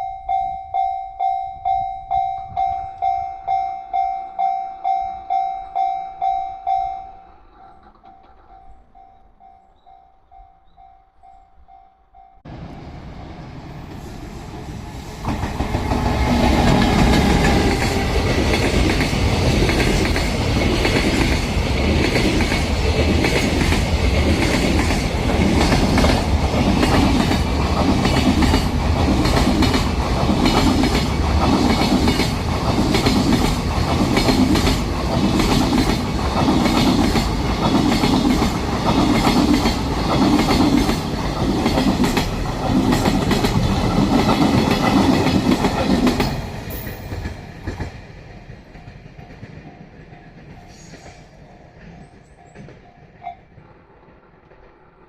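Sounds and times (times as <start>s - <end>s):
freight train rumbling past: 12.4s - 55.0s
wheels clacking over rail joints: 15.2s - 55.0s.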